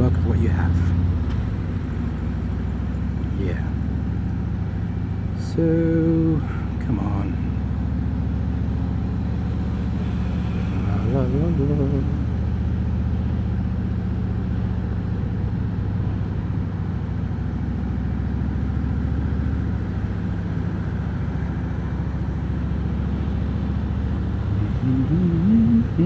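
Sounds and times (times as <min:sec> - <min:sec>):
motorcycle engine running: 0:01.0 - 0:26.0
person singing: 0:24.5 - 0:26.0.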